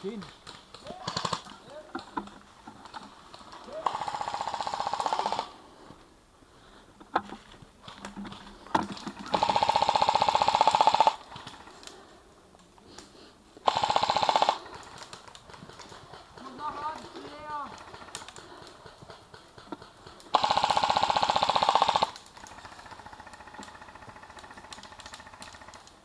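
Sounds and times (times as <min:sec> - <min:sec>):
airsoft gun firing bursts: 0:00.4 - 0:01.5, 0:03.8 - 0:05.6, 0:08.8 - 0:11.8, 0:13.6 - 0:26.0.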